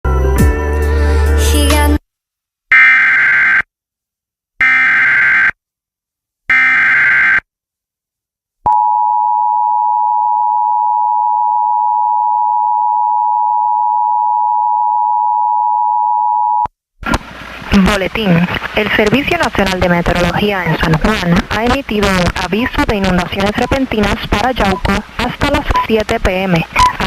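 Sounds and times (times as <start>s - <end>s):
data header bursts: 18.8s - 27.0s.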